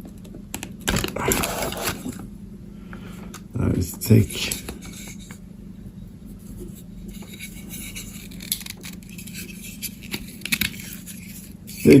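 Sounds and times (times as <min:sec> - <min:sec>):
steady low hum: 0:00.0 - 0:12.0
knife scraping cable insulation: 0:06.6 - 0:12.0.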